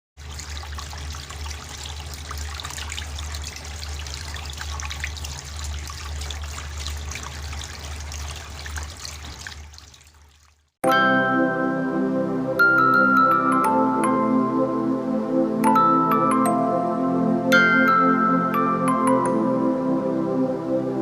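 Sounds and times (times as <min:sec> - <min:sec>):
water trickling and splashing: 0:00.2 - 0:10.8.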